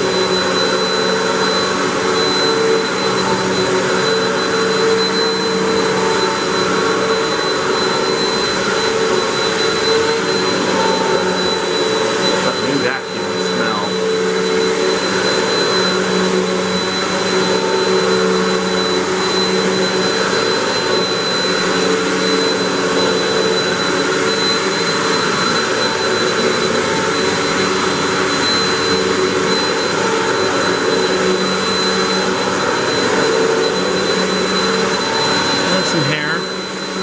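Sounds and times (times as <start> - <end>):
high whine: 0.0 - 37.0
upright vacuum cleaner running: 0.0 - 37.0.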